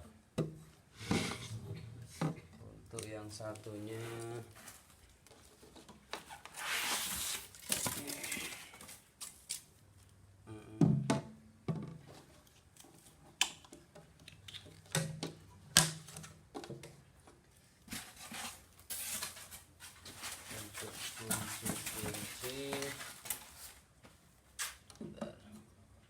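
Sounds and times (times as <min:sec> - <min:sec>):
rustle: 0:05.6 - 0:10.2.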